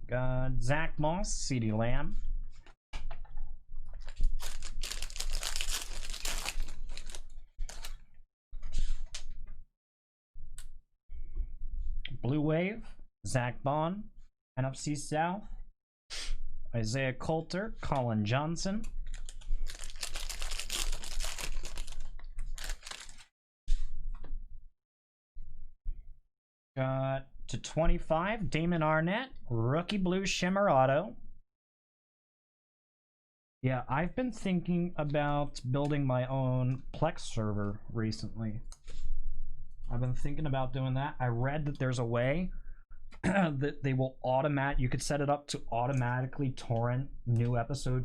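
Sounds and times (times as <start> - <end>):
plastic wrapper tearing and crinkling: 4.0 - 8.0, 19.0 - 23.3.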